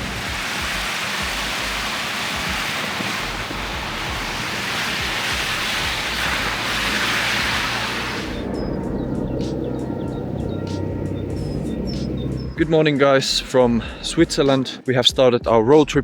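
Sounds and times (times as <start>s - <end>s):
loud rushing noise: 0.0s - 12.6s.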